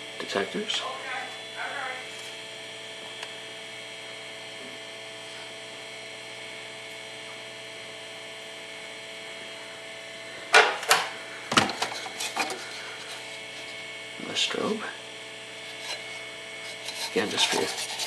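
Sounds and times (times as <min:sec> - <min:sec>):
steady electrical hum: 0:00.0 - 0:18.0
devices knocking and rattling in box: 0:11.5 - 0:12.7.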